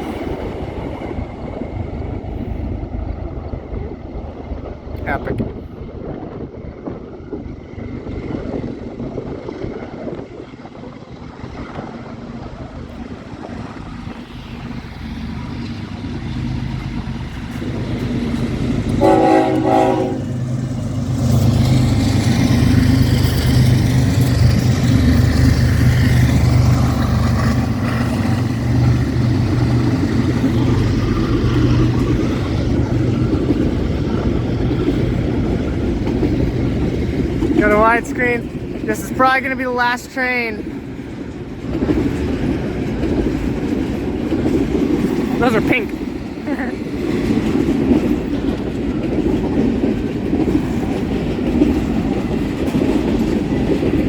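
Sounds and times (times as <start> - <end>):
diesel train passing: 0.0 - 54.0
train horn blast: 18.9 - 20.4.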